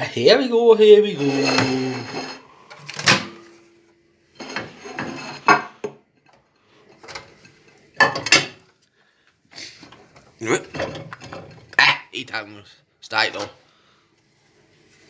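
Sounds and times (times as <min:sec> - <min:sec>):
plate clattering: 0:01.2 - 0:03.6, 0:04.4 - 0:06.0, 0:08.0 - 0:08.6, 0:10.6 - 0:11.8
microwave door opening and shutting: 0:02.8 - 0:03.5.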